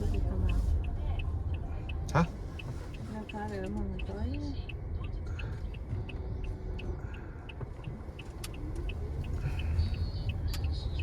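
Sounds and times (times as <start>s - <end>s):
car road and engine rumble: 0.0s - 11.0s.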